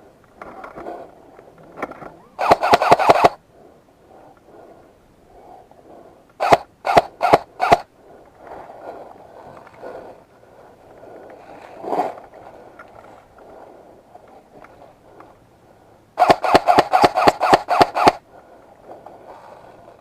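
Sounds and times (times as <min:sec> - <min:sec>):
airsoft gun shots: 0:02.4 - 0:03.4, 0:06.4 - 0:07.9, 0:16.2 - 0:18.2.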